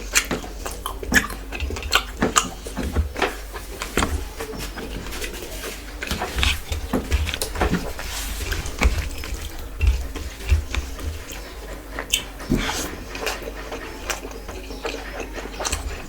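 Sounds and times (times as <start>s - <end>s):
wet chewing and mouth smacks: 6.0s - 16.0s.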